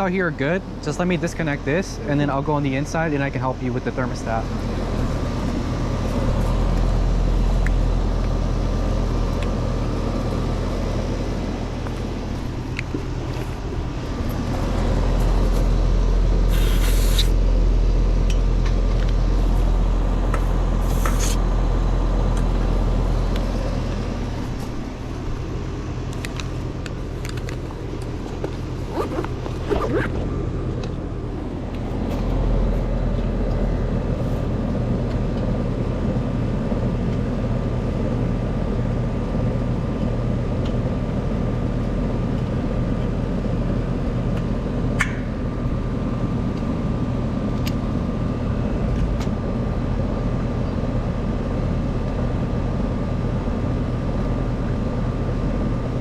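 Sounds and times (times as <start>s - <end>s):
condenser unit humming: 0.0s - 56.0s
refrigerant hissing: 16.4s - 17.4s, 20.8s - 21.4s.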